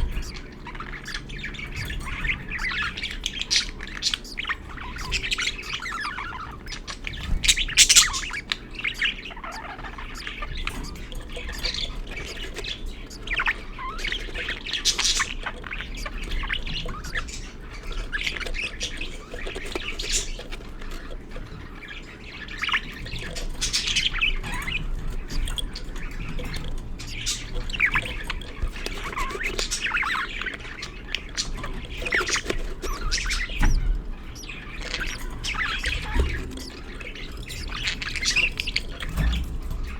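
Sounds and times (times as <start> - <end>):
budgerigars chirping and squawking: 0.0 - 39.9.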